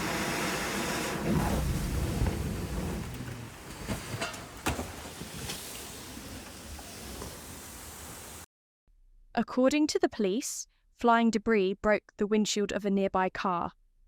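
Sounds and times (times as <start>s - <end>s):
floodwater rushing from manhole: 0.0s - 8.4s
heavy rain: 0.0s - 8.4s.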